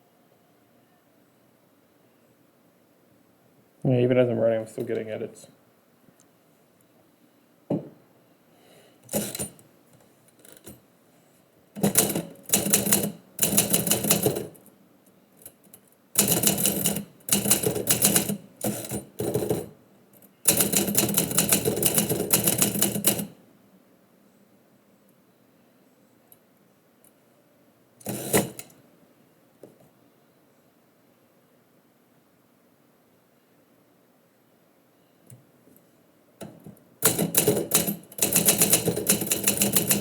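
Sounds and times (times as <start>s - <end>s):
typewriter keys typing: 9.1s - 9.6s, 11.8s - 14.6s, 16.2s - 19.7s, 20.5s - 23.3s, 28.0s - 28.7s, 37.0s - 40.0s.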